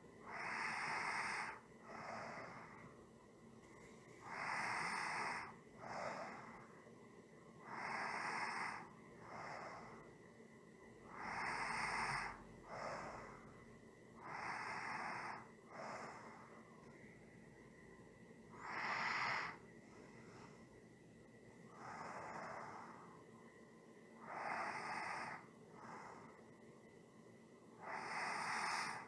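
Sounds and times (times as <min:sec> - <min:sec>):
person breathing slowly: 0:00.0 - 0:06.9, 0:07.6 - 0:10.2, 0:11.0 - 0:17.3, 0:18.5 - 0:20.9, 0:21.6 - 0:23.4, 0:24.1 - 0:26.6, 0:27.8 - 0:29.0.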